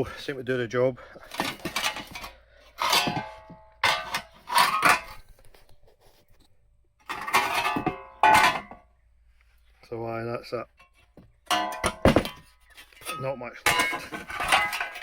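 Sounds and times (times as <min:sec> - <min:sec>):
steel pieces clanking: 0:01.3 - 0:05.2, 0:07.0 - 0:08.8, 0:10.8 - 0:15.0.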